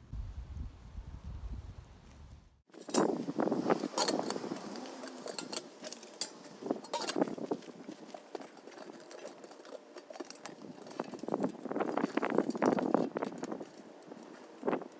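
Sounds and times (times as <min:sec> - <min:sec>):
metal parts clinking: 0:02.7 - 0:14.6.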